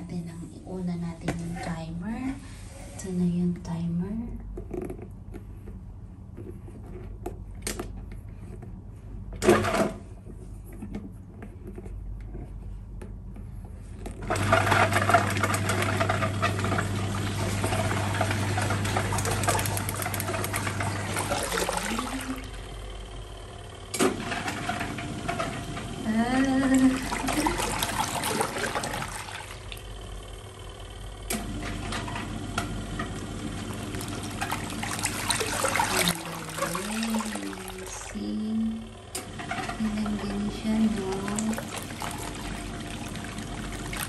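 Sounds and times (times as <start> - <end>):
washing machine motor humming: 7.8 - 44.0
water churning: 14.4 - 22.8, 26.1 - 30.2, 33.2 - 38.4, 39.5 - 44.0.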